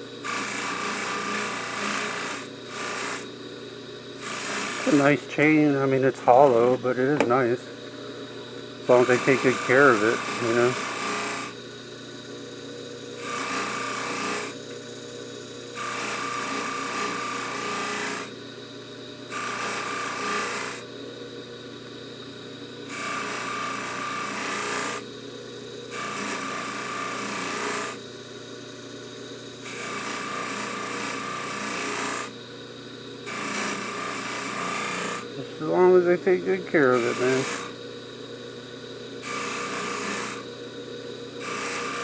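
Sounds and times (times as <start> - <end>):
polishing buffer motor running: 0.0 - 20.8, 22.8 - 42.0
chain rasping against buffing wheel: 4.2 - 7.6, 8.9 - 11.0.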